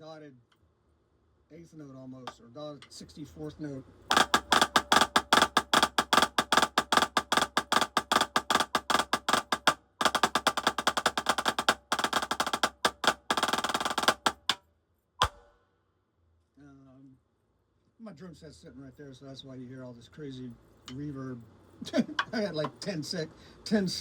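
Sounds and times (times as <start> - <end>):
cymbals and drums ringing: 4.1 - 14.6, 15.2 - 15.6
fast drumstick strokes: 4.1 - 14.6, 15.2 - 15.5.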